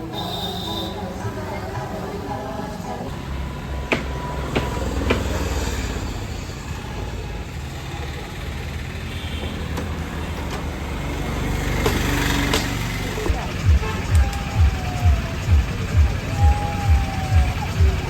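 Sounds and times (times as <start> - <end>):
low outdoor rumble: 12.8 - 18.0.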